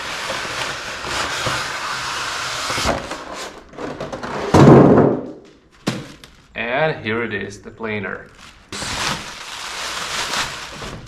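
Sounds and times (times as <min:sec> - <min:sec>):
packaging rustling and scraping: 0:08.3 - 0:11.0.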